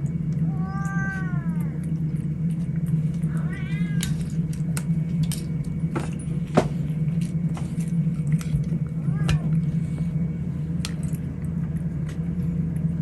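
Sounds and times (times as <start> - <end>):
steady low hum: 0.0 - 13.0
cat meowing: 0.5 - 1.8, 3.3 - 4.2, 9.0 - 9.6.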